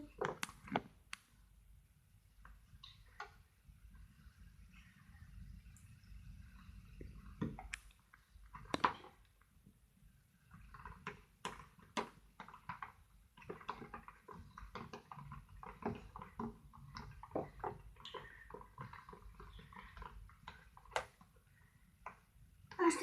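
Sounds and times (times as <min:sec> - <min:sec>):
slime squelching in a bowl: 0:10.3 - 0:23.0.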